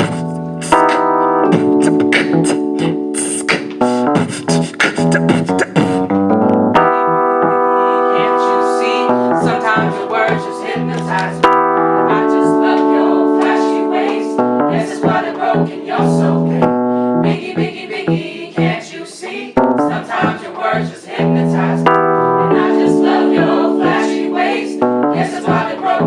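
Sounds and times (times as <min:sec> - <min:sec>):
sustained keyboard chords: 0:00.0 - 0:18.8, 0:19.6 - 0:26.0
group of voices singing: 0:06.8 - 0:26.0.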